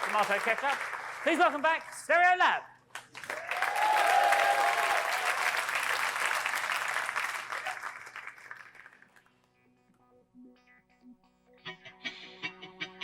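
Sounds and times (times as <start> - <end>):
audience applauding: 0.0 - 2.1, 2.9 - 9.2
soft guitar notes: 10.0 - 13.0.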